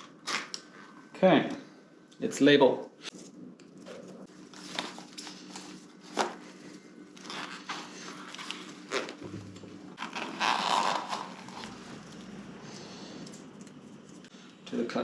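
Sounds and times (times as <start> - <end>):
tape being pulled and torn: 10.0 - 12.2.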